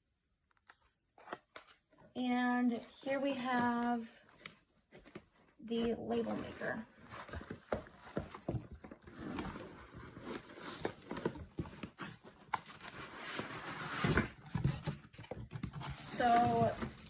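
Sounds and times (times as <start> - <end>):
packaging rustling: 6.2 - 17.0.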